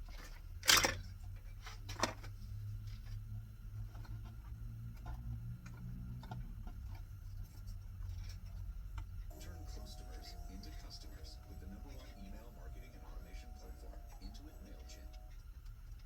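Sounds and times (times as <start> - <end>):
steady low hum: 9.2 - 16.0.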